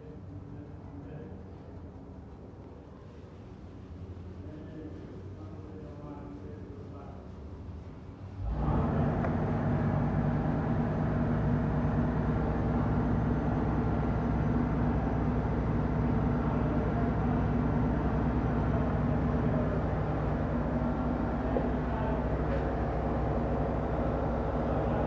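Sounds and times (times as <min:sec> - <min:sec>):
car engine running: 0:08.4 - 0:25.0.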